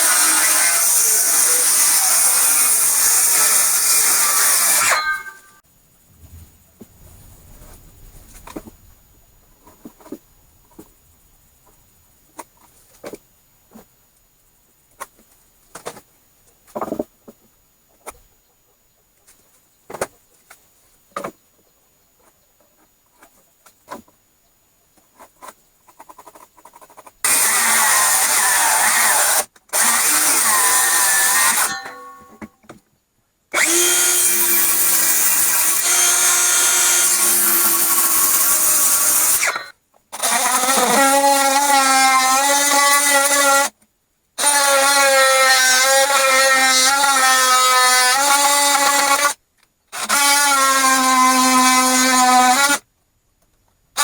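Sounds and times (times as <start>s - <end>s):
power tool cutting wood: 0.0s - 5.6s, 27.3s - 32.0s, 33.6s - 43.7s, 44.4s - 49.4s, 50.0s - 52.8s.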